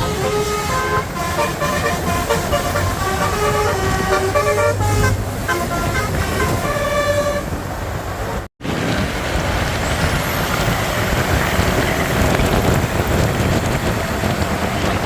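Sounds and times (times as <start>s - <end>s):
musical air horn chord: 0.0s - 7.5s
road traffic noise: 0.0s - 15.0s.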